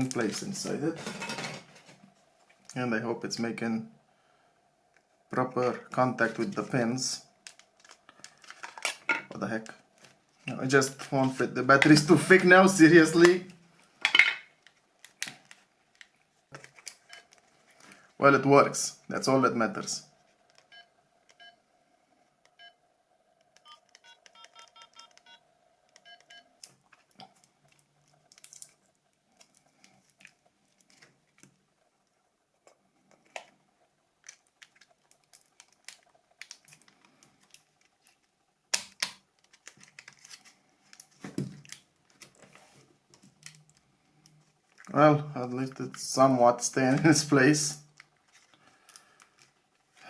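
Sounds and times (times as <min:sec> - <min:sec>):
phone keypad beeps: 0:23.6 - 0:25.4, 0:26.0 - 0:26.4.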